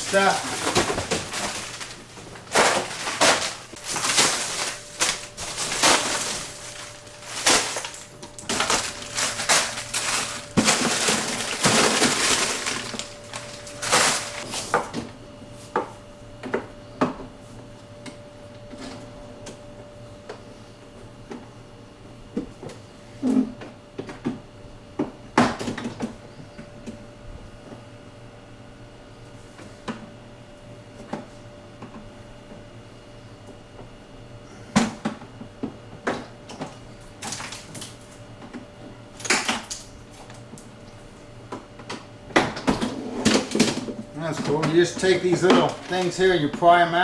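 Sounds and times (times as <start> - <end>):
frozen plastic bags crackling: 0.0 - 14.7, 44.2 - 46.5
hard items clunking: 0.0 - 14.7.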